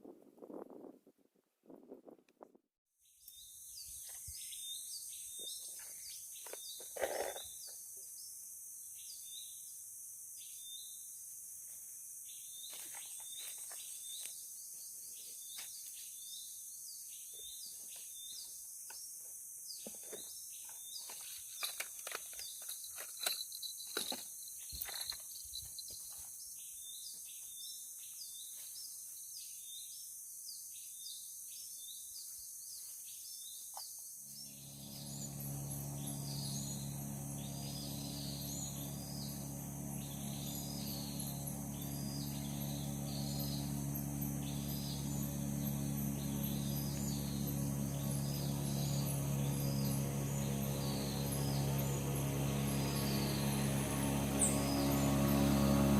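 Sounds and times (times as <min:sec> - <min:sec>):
high insect drone: 0:34.1 - 0:55.9.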